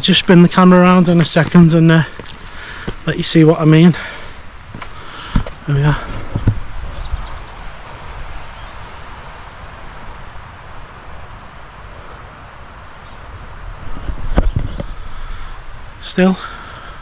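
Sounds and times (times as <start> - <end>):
wind rushing over microphone: 0.0 - 17.0
gusty thumps and low rumble: 4.6 - 8.2, 13.5 - 15.0.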